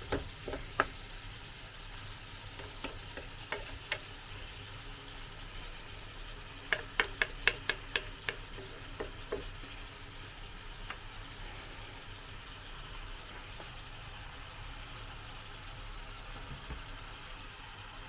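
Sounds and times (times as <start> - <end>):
metal utensil knocking on pot: 0.0 - 1.0, 2.6 - 4.2, 6.7 - 9.5
chicken sizzling: 0.0 - 18.0.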